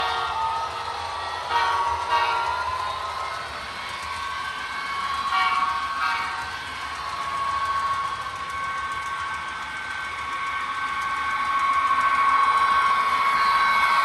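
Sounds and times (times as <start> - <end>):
model locomotive horn toots: 1.5 - 2.8, 5.2 - 6.6, 11.6 - 14.0.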